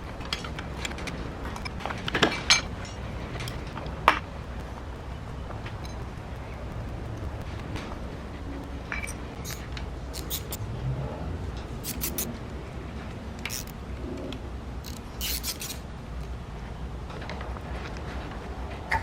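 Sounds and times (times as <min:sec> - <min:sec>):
metallic tool clicks and scrapes: 0:08.9 - 0:10.6, 0:11.8 - 0:12.3, 0:13.4 - 0:13.8, 0:14.8 - 0:15.8.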